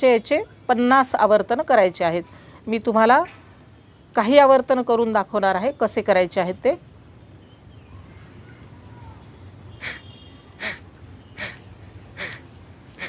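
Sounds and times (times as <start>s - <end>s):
forceful nostril breath puffs: 9.8s - 13.0s.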